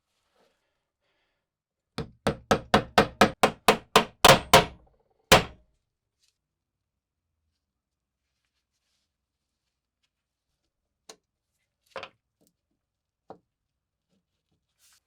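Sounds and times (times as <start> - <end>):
hammer striking metal: 2.0 - 5.6.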